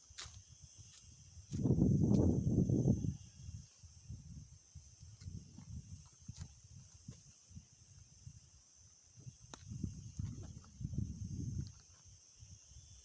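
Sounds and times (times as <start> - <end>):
high-pitched insect chorus: 0.0 - 13.0.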